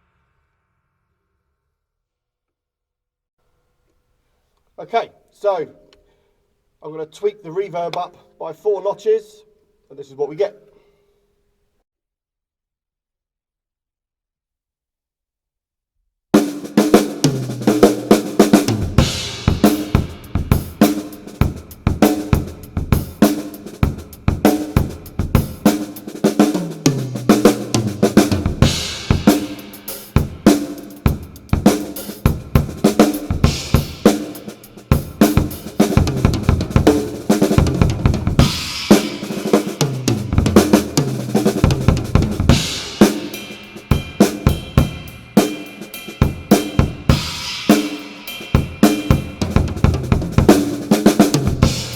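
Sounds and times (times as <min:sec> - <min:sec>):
drum kit groove: 0:16.4 - 0:51.9
descending tom fills: 0:16.8 - 0:51.9.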